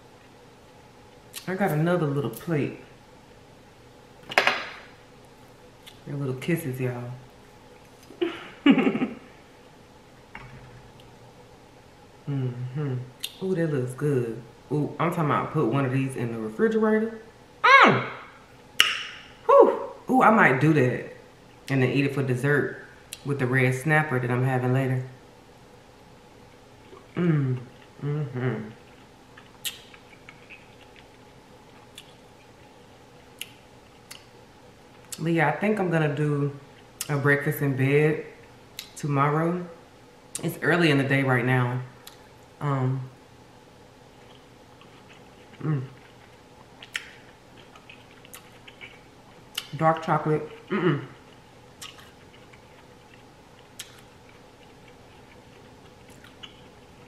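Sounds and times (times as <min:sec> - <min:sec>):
person chewing food: 0:26.5 - 0:28.0, 0:28.7 - 0:34.3, 0:44.1 - 0:57.0
wet mouth clicks: 0:29.4 - 0:31.1, 0:44.2 - 0:49.8, 0:50.5 - 0:55.3.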